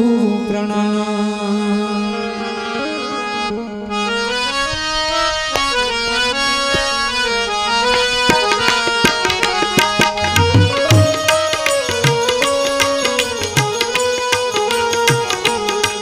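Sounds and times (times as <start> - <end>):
harmonium playing: 0.0 - 16.0
hand drum strokes: 7.9 - 16.0.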